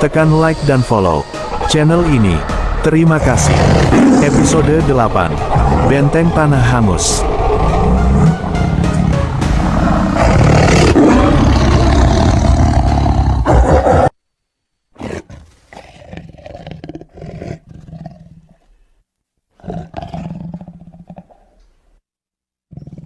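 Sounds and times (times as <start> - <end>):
low growling: 0.0 - 14.1
deep animal roaring: 1.1 - 14.1.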